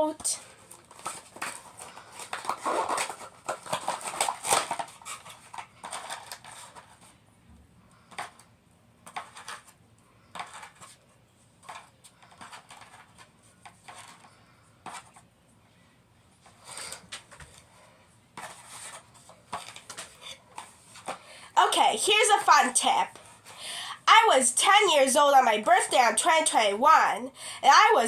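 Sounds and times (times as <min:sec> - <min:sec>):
plastic packaging rustling: 0:00.4 - 0:07.2.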